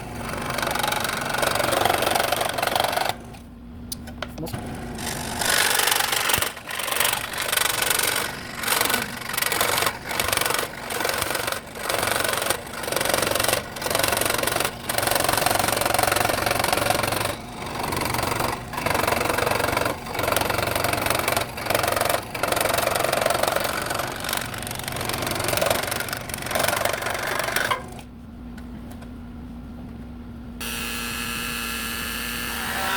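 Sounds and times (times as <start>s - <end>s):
power tool working wood: 30.6s - 32.9s.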